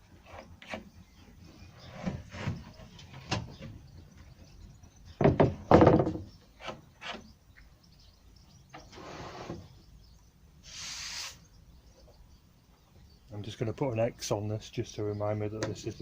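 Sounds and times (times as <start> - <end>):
plywood scraping: 1.7 - 3.6
plywood panels knocking: 5.2 - 6.3.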